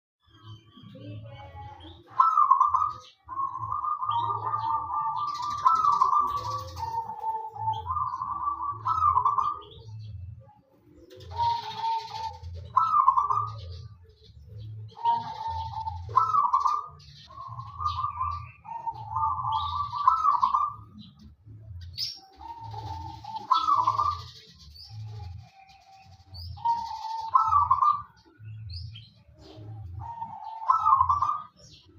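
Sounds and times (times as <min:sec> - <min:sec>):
dove trilled cooing: 0:01.8 - 0:31.9.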